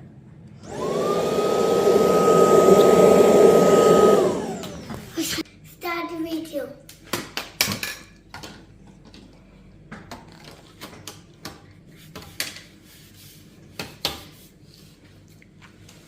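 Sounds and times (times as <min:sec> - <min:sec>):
vacuum cleaner parts clicking: 0:00.6 - 0:05.2.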